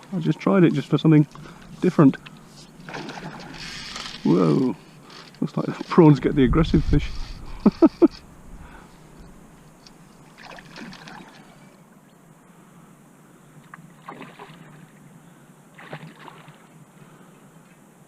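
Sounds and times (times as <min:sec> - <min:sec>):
water lapping around boat: 0:00.8 - 0:06.3, 0:08.6 - 0:11.8, 0:13.6 - 0:15.1, 0:15.7 - 0:17.5
short splashes: 0:02.8 - 0:04.4, 0:10.3 - 0:11.6, 0:14.0 - 0:14.8, 0:15.8 - 0:16.7.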